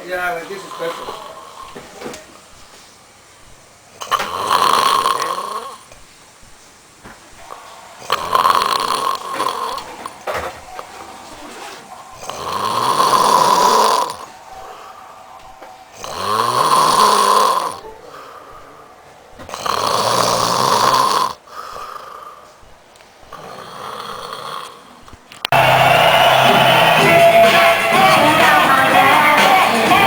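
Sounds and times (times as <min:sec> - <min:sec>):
quiet breaths: 0:00.0 - 0:25.4
man snoring loudly: 0:00.2 - 0:01.8, 0:04.0 - 0:05.9, 0:07.4 - 0:14.9, 0:15.9 - 0:22.5, 0:23.3 - 0:30.0
loud music: 0:25.5 - 0:30.0.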